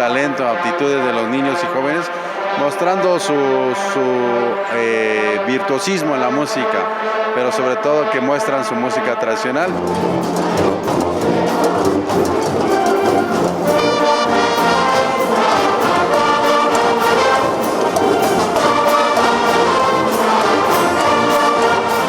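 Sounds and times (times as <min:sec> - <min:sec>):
brass band playing: 0:00.0 - 0:22.0
percussion beat: 0:09.7 - 0:22.0.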